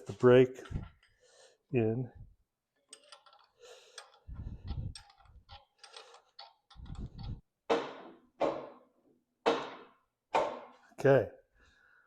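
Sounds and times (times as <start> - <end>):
hand tools clicking on metal: 2.9 - 7.3.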